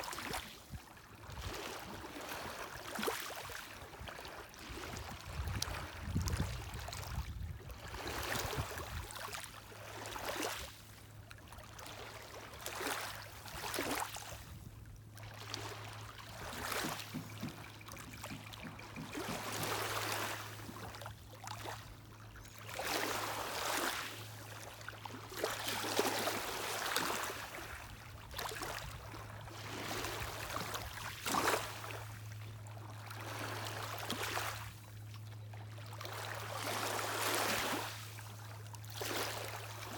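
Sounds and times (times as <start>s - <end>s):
waves lapping against shore: 0.0s - 39.9s
boat engine drone: 14.7s - 22.4s.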